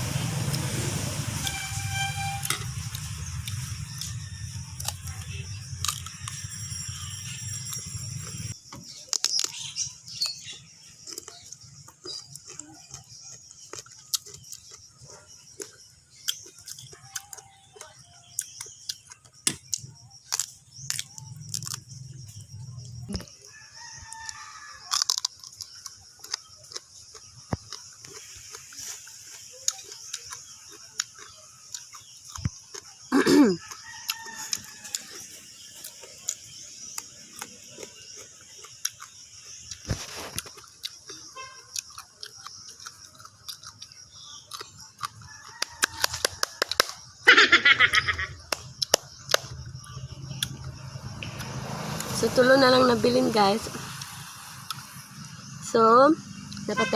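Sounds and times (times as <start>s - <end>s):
rooster crowing: 23.4s - 25.1s, 33.5s - 35.3s, 45.2s - 48.1s.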